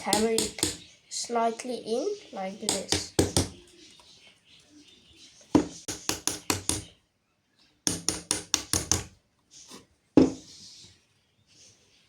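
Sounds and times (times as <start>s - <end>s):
hammer tapping nails: 0.0s - 0.9s, 2.7s - 3.6s, 5.6s - 6.9s, 7.9s - 9.2s.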